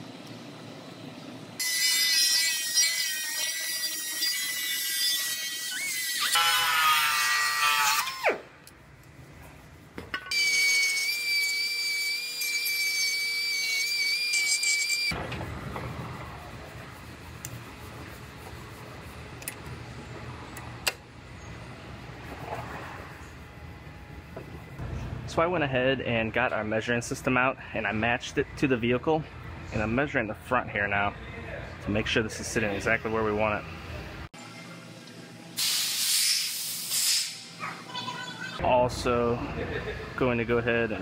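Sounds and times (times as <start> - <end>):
power tool cutting steel: 1.6 - 8.4, 10.3 - 15.2.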